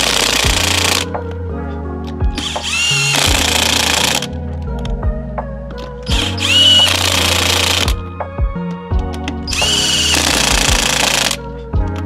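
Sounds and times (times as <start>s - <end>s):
impact wrench whining: 0.0s - 1.1s, 2.4s - 4.3s, 6.1s - 8.0s, 9.5s - 11.4s.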